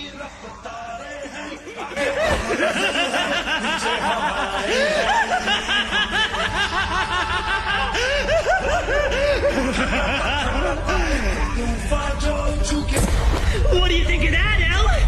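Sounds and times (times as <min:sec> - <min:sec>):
maniacal cackling laugh: 0:01.4 - 0:11.5.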